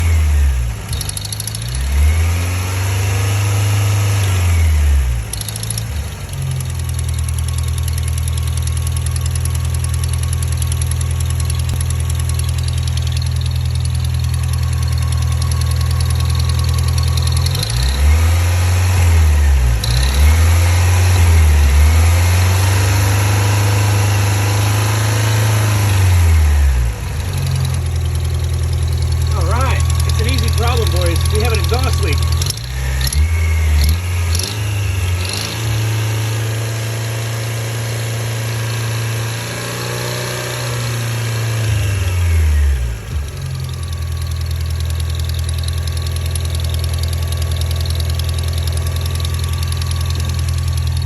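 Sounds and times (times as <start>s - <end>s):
truck engine idling and revving: 0.0s - 51.0s
exhaust ticking: 4.1s - 34.6s, 42.7s - 51.0s.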